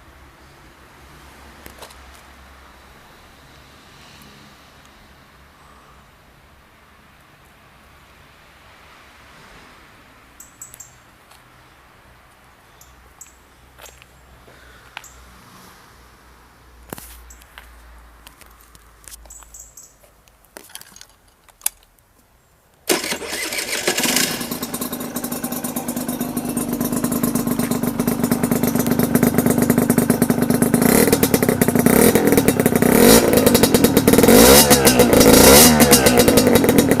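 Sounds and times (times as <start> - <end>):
motorcycle engine running: 22.9 - 37.0.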